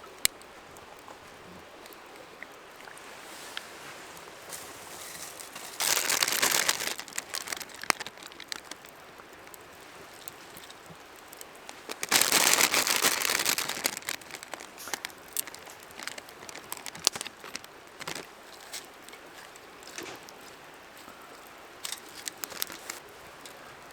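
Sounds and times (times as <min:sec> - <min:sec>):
crinkling handling noise: 0:03.1 - 0:20.5, 0:21.8 - 0:23.5.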